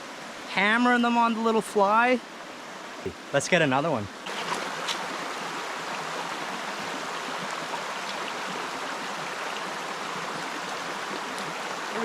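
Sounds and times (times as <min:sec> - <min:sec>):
creek water running over stones: 0:03.0 - 0:12.0.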